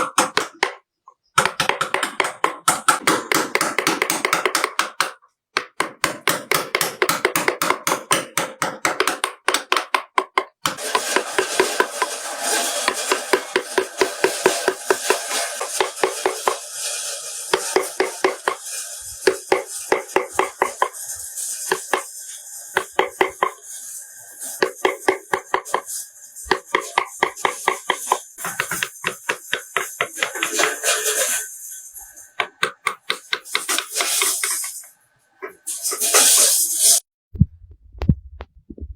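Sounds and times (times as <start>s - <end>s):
mallet tapping chisel into wood: 0.0s - 0.8s, 1.4s - 10.8s, 26.5s - 30.7s, 32.4s - 33.9s.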